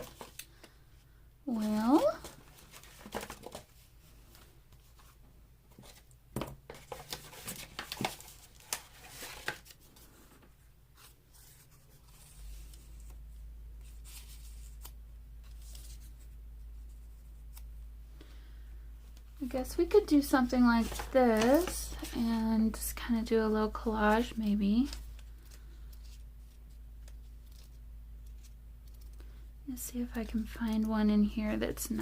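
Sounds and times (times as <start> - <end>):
paper rustling and shuffling: 0.0 - 0.8, 1.5 - 13.2, 13.8 - 17.6, 19.0 - 31.0
steady low hum: 9.6 - 32.0.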